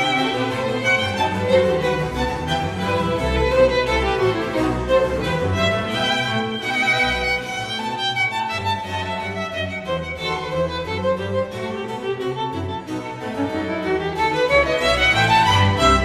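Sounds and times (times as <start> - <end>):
bowed strings music: 0.0 - 16.0.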